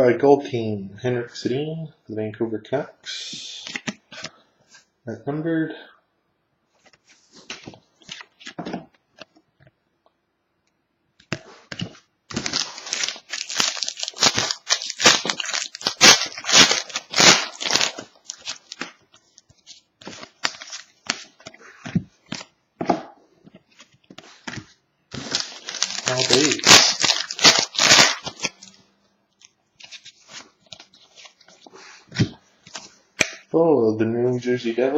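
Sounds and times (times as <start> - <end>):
card pack wrapper crinkling: 11.7 - 21.5, 25.1 - 28.8, 29.4 - 31.7
wrapper rustles and clicks: 11.7 - 22.5, 23.8 - 28.8, 29.4 - 33.0.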